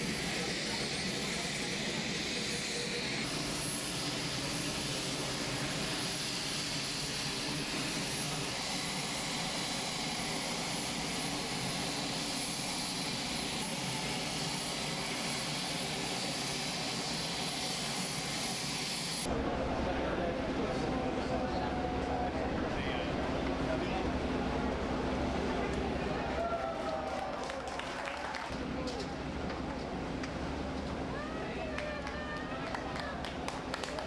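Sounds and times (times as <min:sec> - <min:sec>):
aircraft engine drone: 0:00.0 - 0:26.4.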